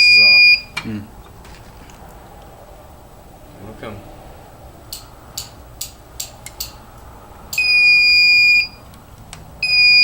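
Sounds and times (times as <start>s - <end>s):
alarm panel buzzer beep: 0.0s - 0.8s, 7.6s - 8.8s, 9.6s - 10.0s.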